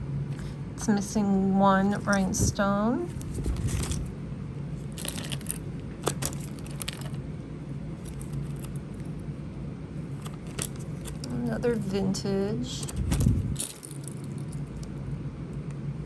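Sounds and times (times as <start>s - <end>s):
steady low hum: 0.0s - 16.0s
metal jewelry clinking: 3.1s - 4.1s, 4.8s - 7.2s, 8.0s - 9.2s, 10.1s - 11.9s, 12.8s - 14.9s.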